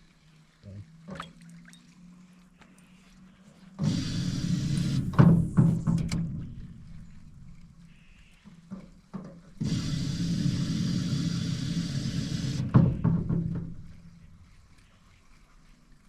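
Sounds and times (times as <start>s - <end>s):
electric trolling motor humming: 0.0s - 16.0s
water hiss: 0.0s - 16.0s
hollow knock on boat: 5.1s - 6.6s, 12.7s - 14.2s.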